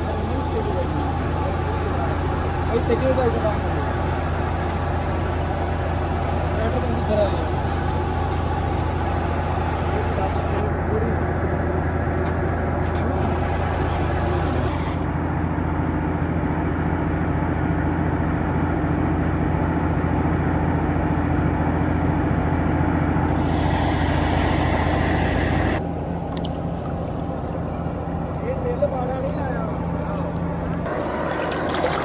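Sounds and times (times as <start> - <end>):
tractor diesel engine running: 0.0 - 32.0
hiss: 23.3 - 25.8.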